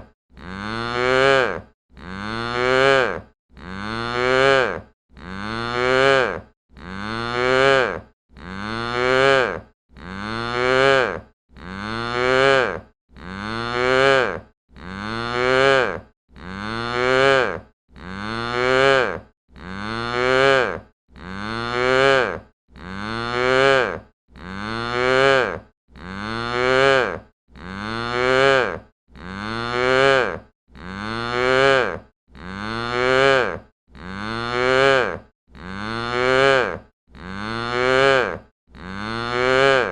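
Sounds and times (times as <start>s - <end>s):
cow mooing: 0.4s - 39.9s.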